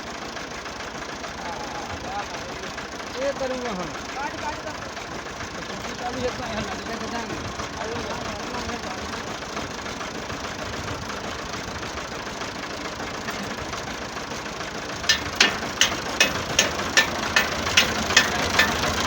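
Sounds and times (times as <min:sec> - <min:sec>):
tractor engine running: 0:00.0 - 0:19.0
sharp clicks: 0:15.1 - 0:19.0.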